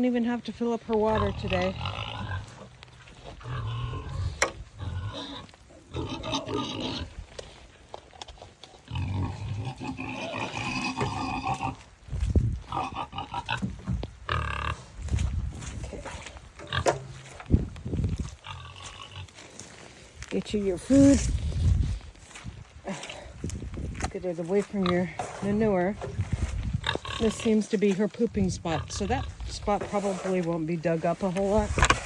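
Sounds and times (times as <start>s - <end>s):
pig grunting: 1.0s - 7.2s, 8.7s - 11.9s, 12.6s - 15.0s.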